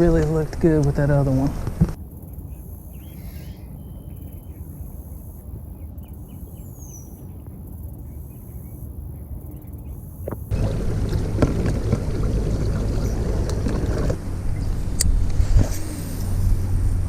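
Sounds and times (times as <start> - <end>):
low wind rumble: 0.0 - 17.0
small birds chirping: 2.0 - 13.7.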